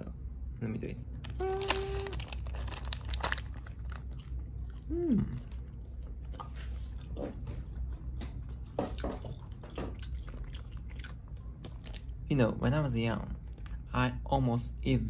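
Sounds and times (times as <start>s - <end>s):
person chewing snack: 1.3s - 12.2s.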